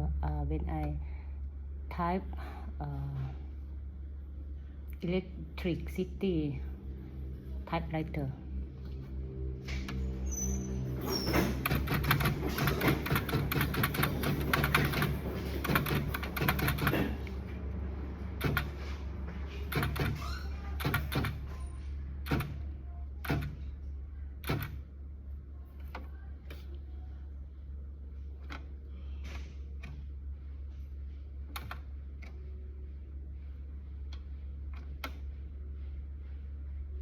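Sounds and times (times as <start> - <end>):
low hum: 0.0 - 37.0
typewriter keys striking: 11.4 - 17.4, 18.4 - 18.8, 19.6 - 20.2, 20.8 - 21.5, 22.2 - 22.6.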